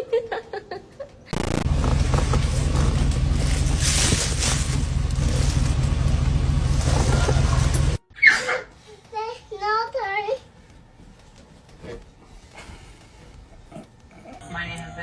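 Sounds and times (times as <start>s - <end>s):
low rumble: 1.4s - 8.0s.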